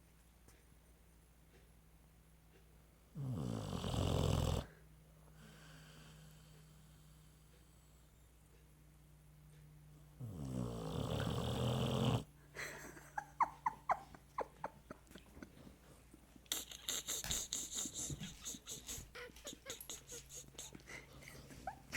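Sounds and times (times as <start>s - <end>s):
dog snoring: 3.1s - 4.8s, 10.2s - 12.3s
noisy hiss: 15.8s - 21.2s.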